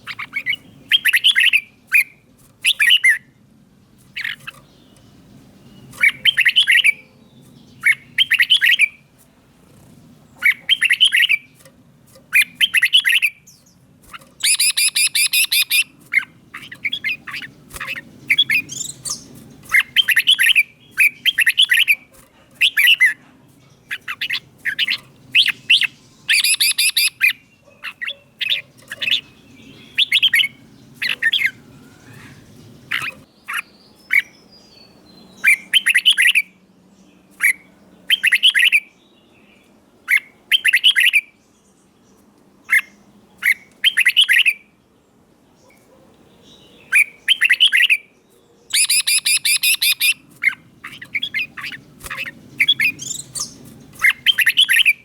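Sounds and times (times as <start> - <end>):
harsh rattling bird call: 0.0 - 3.3, 4.0 - 36.5, 48.7 - 55.0
bird song phrases: 0.0 - 55.0.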